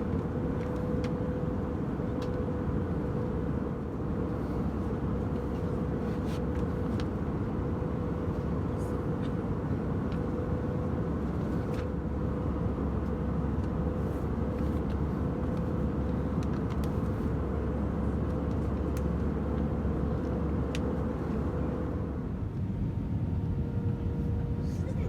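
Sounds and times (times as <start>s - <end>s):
airplane cabin engine rush: 0.0s - 25.0s
constant hum tone: 0.0s - 25.0s.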